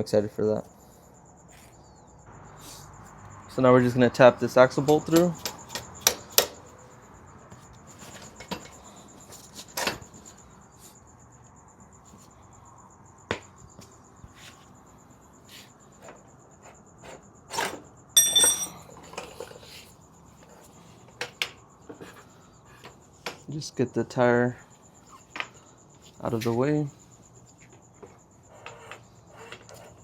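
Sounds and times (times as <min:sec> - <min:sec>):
hammer tapping metal: 0:04.9 - 0:06.6, 0:18.2 - 0:18.8
ringing metal clanks: 0:18.2 - 0:18.8.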